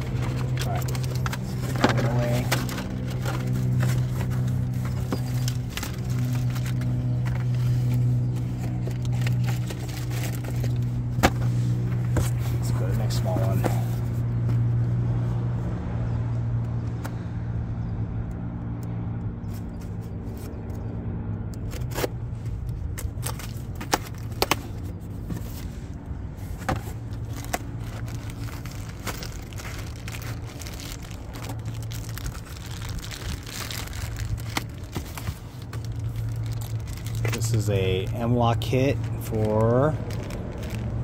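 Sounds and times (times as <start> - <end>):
packaging clicks and crinkles: 0.0 - 11.4, 21.6 - 25.6, 26.5 - 41.0.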